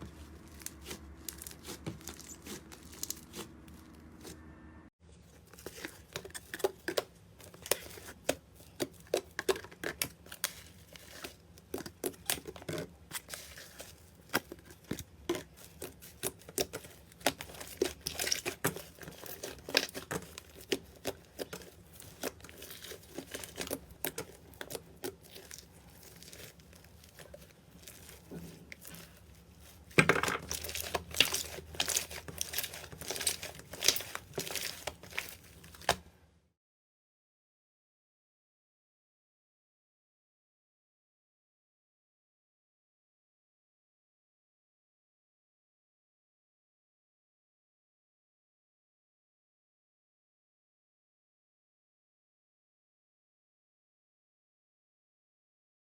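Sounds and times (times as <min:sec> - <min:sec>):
slime crackling and squelching: 0:00.0 - 0:04.4, 0:05.3 - 0:36.1.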